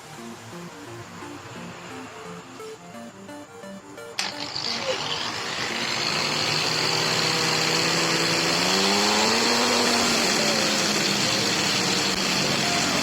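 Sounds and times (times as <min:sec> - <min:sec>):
power tool motor running: 0:04.2 - 0:13.0.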